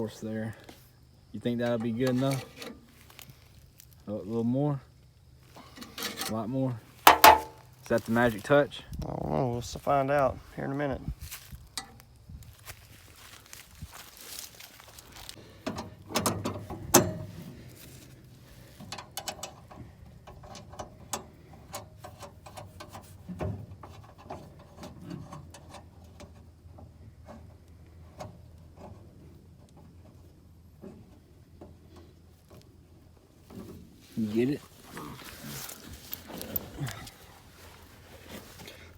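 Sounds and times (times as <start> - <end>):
metal knocks: 7.0 - 7.6.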